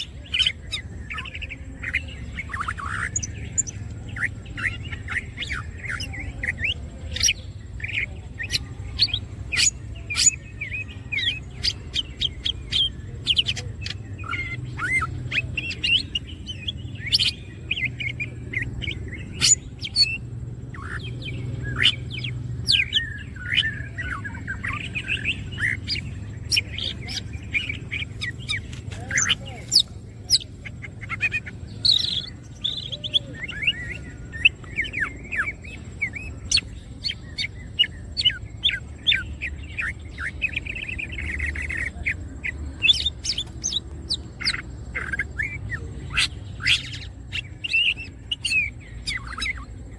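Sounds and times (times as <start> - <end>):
bird singing with chirps and trills: 0.0 - 49.9.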